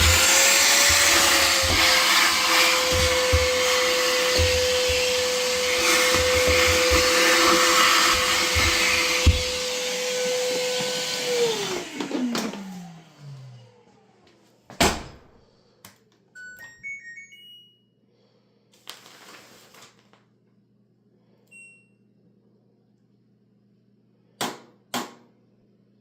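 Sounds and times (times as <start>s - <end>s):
vacuum cleaner motor whining: 0.0s - 14.3s
electronic appliance beeps: 21.5s - 22.0s.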